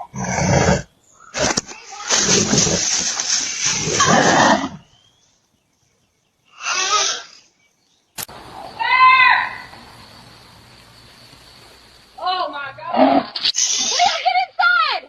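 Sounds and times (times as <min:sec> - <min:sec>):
bear roaring: 0:00.0 - 0:04.8.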